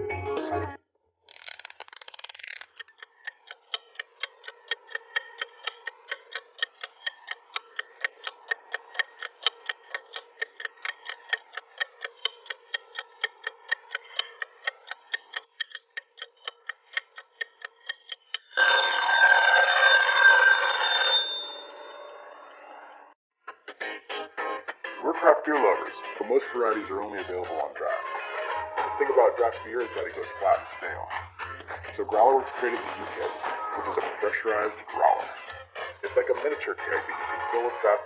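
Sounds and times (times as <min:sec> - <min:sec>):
mechanical kitchen timer ticking: 0:02.6 - 0:19.2.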